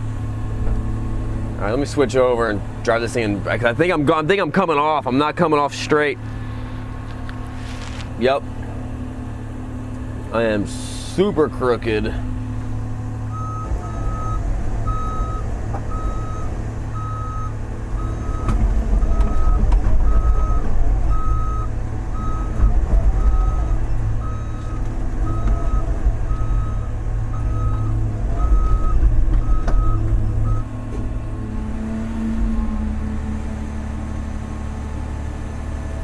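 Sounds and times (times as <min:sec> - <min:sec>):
diesel engine running: 0:00.0 - 0:36.0
excavator travel alarm beeping: 0:13.1 - 0:30.8.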